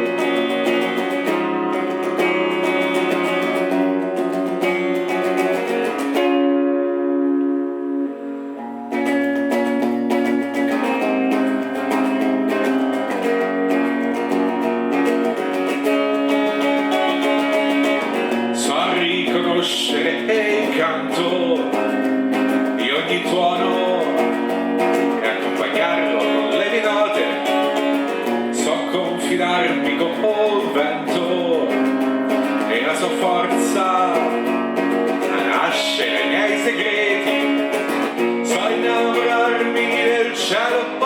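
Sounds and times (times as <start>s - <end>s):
gliding melodic line: 0.0s - 18.6s
acoustic guitar strumming: 0.0s - 41.0s.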